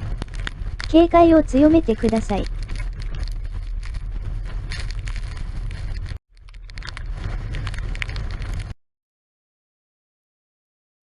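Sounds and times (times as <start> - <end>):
storm wind buffeting microphone: 0.0 - 8.8.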